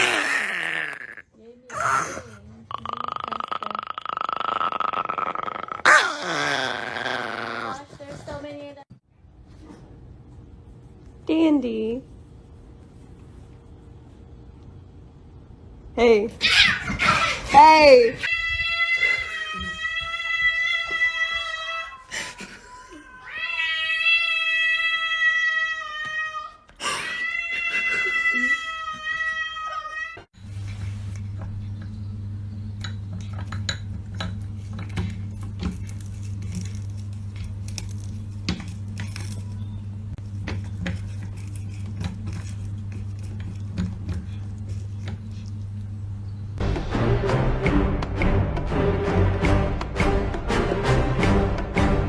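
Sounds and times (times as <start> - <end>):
cat yowling: 18.2 - 30.3.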